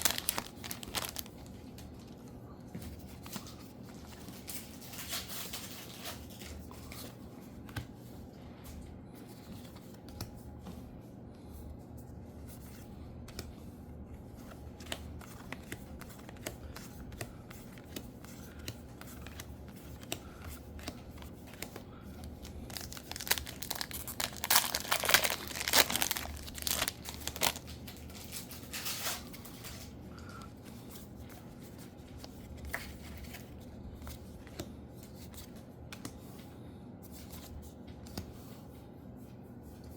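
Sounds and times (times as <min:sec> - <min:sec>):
foil wrappers crinkling and tearing: 0:00.0 - 0:02.2, 0:22.4 - 0:29.9.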